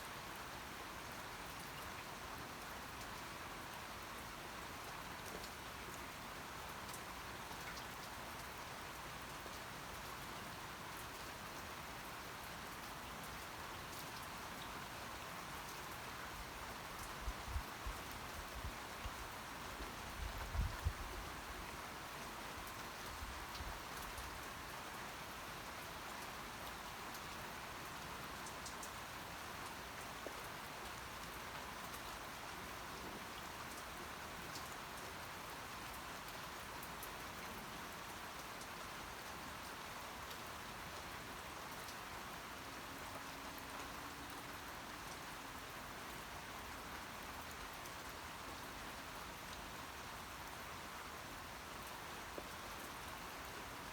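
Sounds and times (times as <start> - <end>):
steady rain falling: 0.0 - 53.9.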